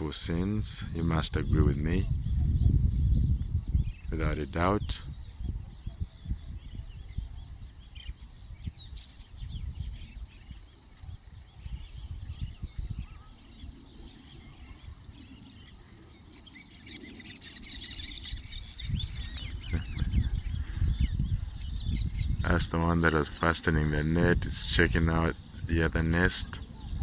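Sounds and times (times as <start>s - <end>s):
low rumbling microphone noise: 0.0s - 10.2s, 18.6s - 27.0s
birds chirping and chattering: 0.0s - 27.0s
insect trill: 0.0s - 27.0s.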